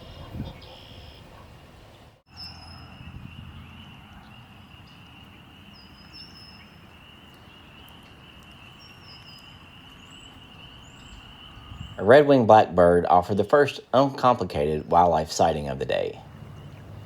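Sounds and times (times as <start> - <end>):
bird whistles: 0.0 - 1.3
low rumble of wind: 0.0 - 17.0.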